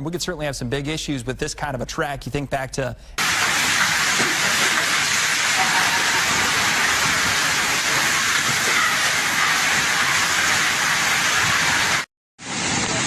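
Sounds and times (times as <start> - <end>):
heavy rain: 3.2 - 13.0
storm water rushing: 3.2 - 13.0.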